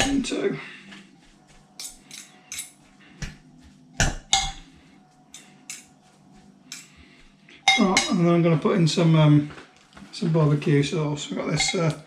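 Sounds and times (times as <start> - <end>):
metal forks clinking against pot: 1.8 - 2.8, 5.3 - 5.9, 6.7 - 6.9, 11.6 - 12.0.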